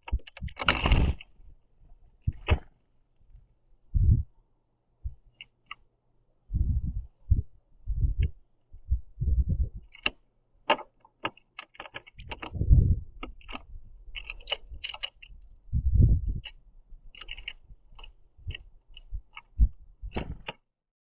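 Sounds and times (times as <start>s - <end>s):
beaks tapping on seeds and wood: 9.8s - 12.6s.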